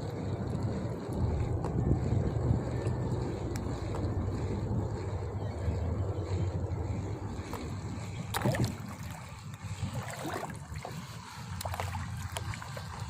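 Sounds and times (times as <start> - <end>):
wind rumble on microphone: 0.0 - 13.0
water sloshing and trickling: 6.9 - 13.0
water splash: 8.3 - 9.2, 9.9 - 10.9.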